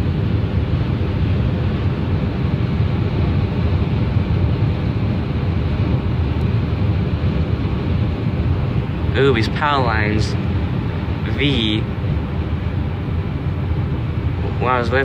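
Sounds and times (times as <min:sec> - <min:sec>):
wind hiss: 0:00.0 - 0:15.0.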